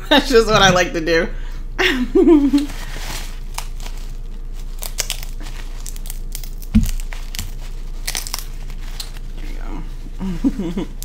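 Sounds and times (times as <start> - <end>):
crab shell cracking: 4.6 - 9.2.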